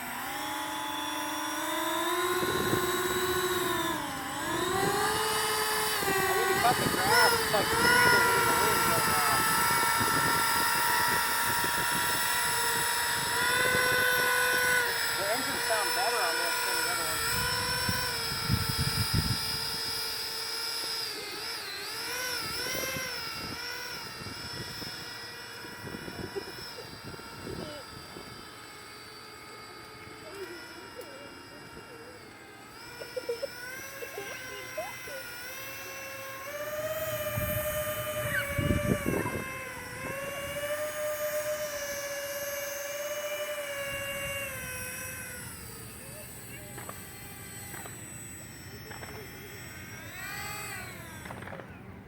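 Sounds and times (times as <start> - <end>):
electric fans high whine: 0.0 - 52.0
wind buffeting microphone: 2.3 - 15.8, 17.0 - 20.0, 22.4 - 28.5, 36.5 - 41.5.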